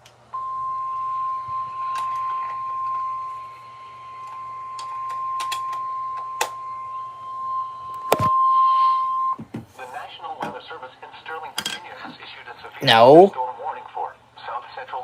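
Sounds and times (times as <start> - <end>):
steady high alarm tone: 0.3 - 9.4.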